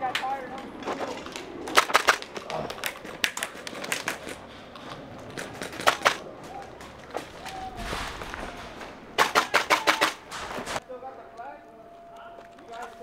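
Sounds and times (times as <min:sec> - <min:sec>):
airsoft guns firing: 0:01.7 - 0:02.5, 0:05.5 - 0:06.2, 0:08.0 - 0:10.8.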